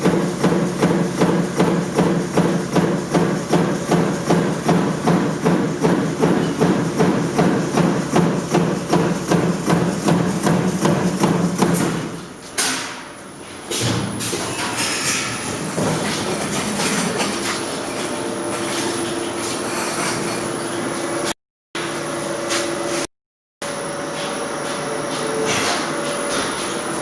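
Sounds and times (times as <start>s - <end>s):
metal-working machine striking: 0.0s - 13.1s.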